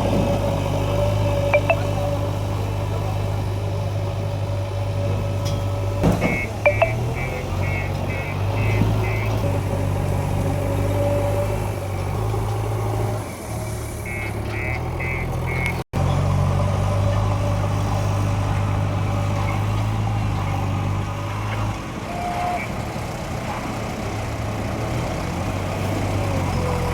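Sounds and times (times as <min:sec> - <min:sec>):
heavy vehicle engine running: 0:00.0 - 0:26.9
reversing alarm beeps: 0:01.5 - 0:02.0, 0:06.2 - 0:09.4, 0:14.0 - 0:15.8.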